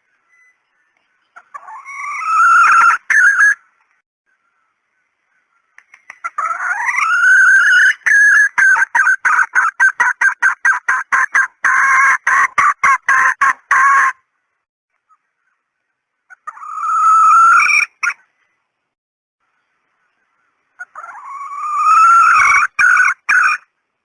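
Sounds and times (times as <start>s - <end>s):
hen clucking rapidly: 1.4s - 3.6s, 5.8s - 14.2s, 16.3s - 18.2s, 20.8s - 23.7s.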